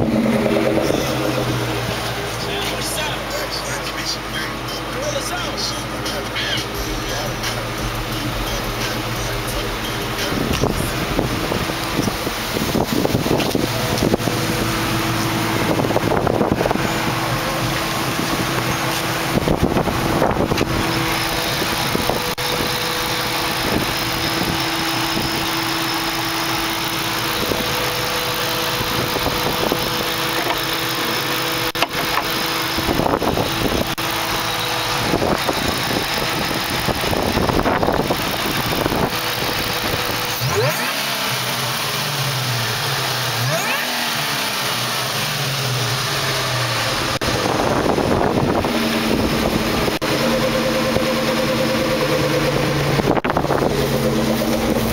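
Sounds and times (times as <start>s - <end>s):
car engine idling and revving: 0.0s - 54.9s
wind buffeting microphone: 10.4s - 22.4s, 47.2s - 50.0s.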